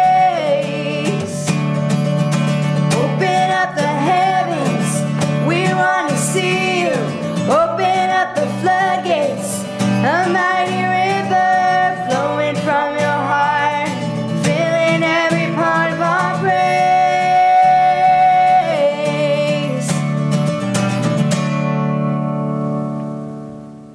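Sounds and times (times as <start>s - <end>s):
woman singing worship song: 0.0s - 1.6s, 2.9s - 20.0s
acoustic guitar: 0.0s - 23.9s.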